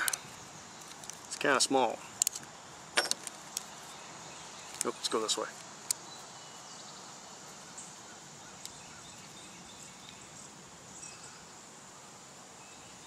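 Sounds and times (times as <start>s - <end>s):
faint clicks: 0.0s - 1.6s, 8.6s - 8.8s.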